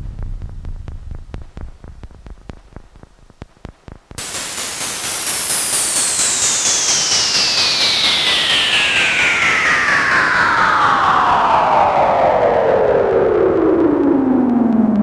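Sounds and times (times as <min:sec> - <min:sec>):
low rumble: 0:00.0 - 0:02.9
pulsing hiss: 0:04.2 - 0:09.0
high whine falling in pitch: 0:04.2 - 0:15.0.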